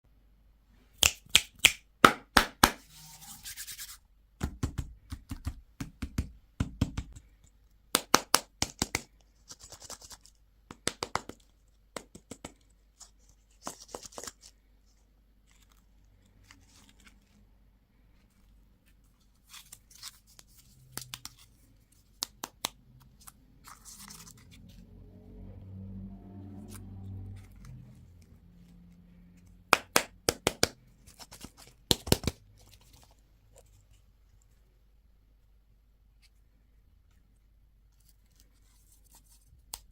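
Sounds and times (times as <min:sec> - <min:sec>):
scratchy packaging rustles: 0:23.1 - 0:24.9
low rumble: 0:24.4 - 0:29.1.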